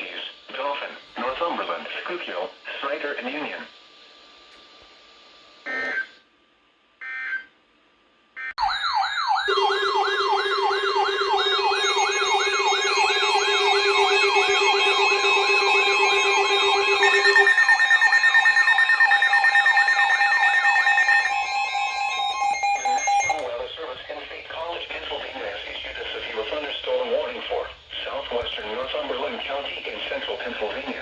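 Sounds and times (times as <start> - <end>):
layered electronic siren: 8.4 - 23.5
alert data burst buzzes: 9.5 - 23.4.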